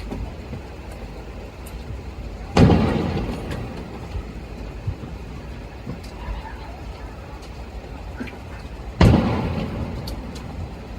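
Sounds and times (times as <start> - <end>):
low background rumble: 0.0 - 10.9
firework boom: 2.6 - 6.0, 9.0 - 10.9.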